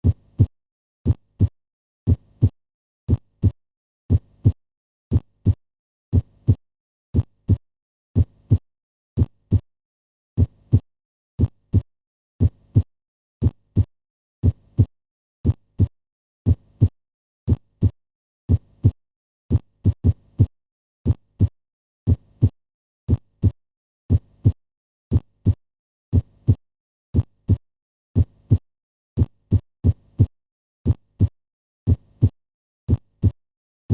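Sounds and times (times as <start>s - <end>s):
heartbeat lub-dub: 0.0s - 1.5s, 2.1s - 6.6s, 7.2s - 7.6s, 8.2s - 8.6s, 9.2s - 9.6s, 11.4s - 15.9s, 16.5s - 16.9s, 17.5s - 20.5s, 21.1s - 21.5s, 22.1s - 26.6s, 27.2s - 27.6s, 28.2s - 28.6s, 29.2s - 30.3s, 30.9s - 31.3s, 31.9s - 33.4s.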